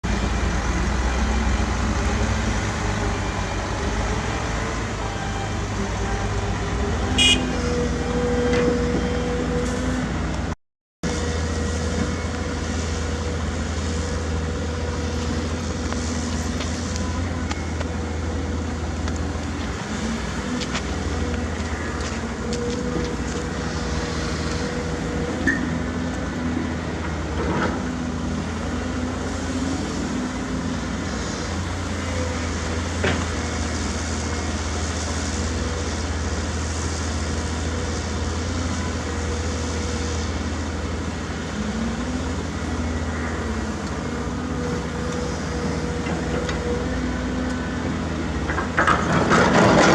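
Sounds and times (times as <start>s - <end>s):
heavy machinery diesel engines: 0.0s - 49.9s.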